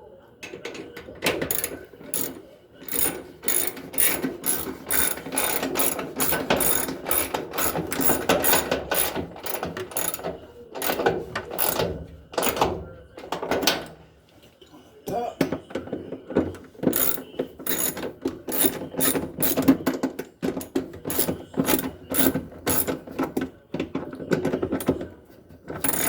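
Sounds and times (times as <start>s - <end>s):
ratchet wrench clicking: 1.5s - 11.8s, 16.9s - 19.7s, 21.1s - 22.9s.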